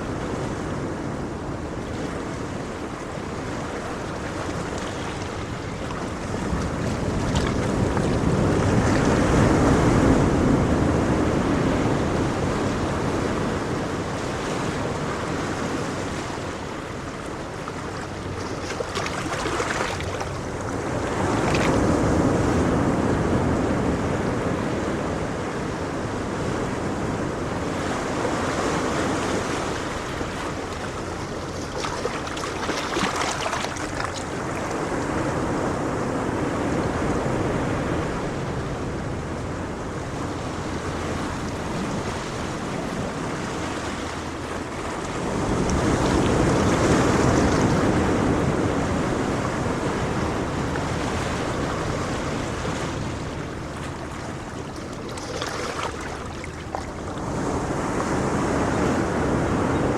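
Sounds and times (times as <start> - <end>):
waves breaking on shore: 0.0 - 59.9.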